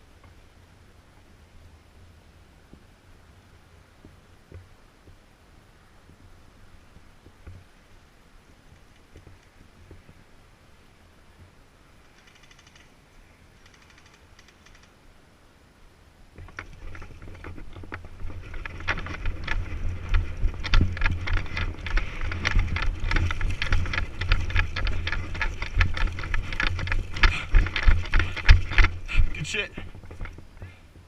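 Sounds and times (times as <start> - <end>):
close rustling and knocking: 16.4 - 30.7.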